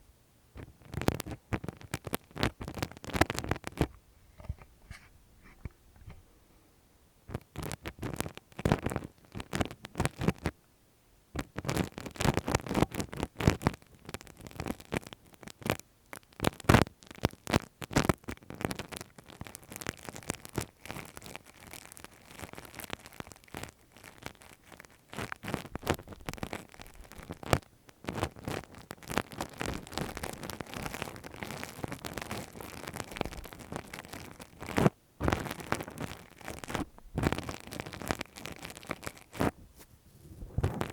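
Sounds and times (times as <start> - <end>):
tool scratching microphone: 4.3 - 5.7.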